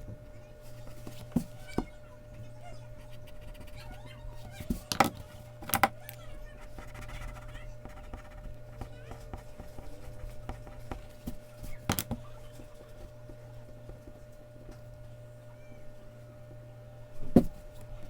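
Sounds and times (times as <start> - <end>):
steady low hum: 0.0 - 18.0
pencil scratching on paper: 3.0 - 5.4, 6.5 - 13.1.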